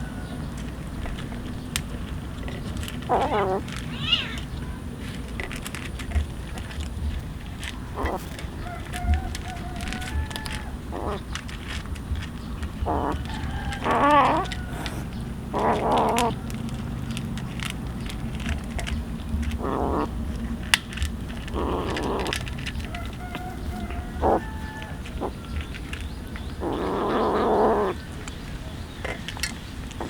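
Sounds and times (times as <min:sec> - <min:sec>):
scattered clicks: 0:00.5 - 0:30.0
animal wavering cries: 0:03.0 - 0:04.8, 0:07.8 - 0:11.8, 0:12.6 - 0:16.8, 0:19.4 - 0:28.3.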